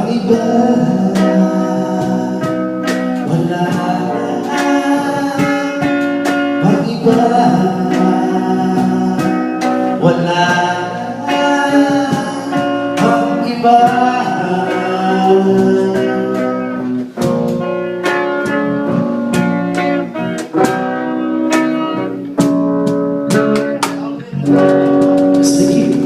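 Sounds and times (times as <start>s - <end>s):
person singing a long note: 0.0s - 16.9s
guitar chords: 0.0s - 26.0s
regular beat: 0.0s - 26.0s.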